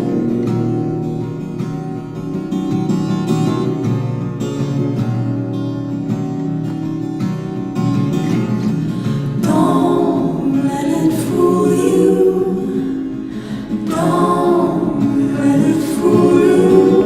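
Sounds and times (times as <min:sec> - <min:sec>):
voices singing together: 0:09.4 - 0:17.0.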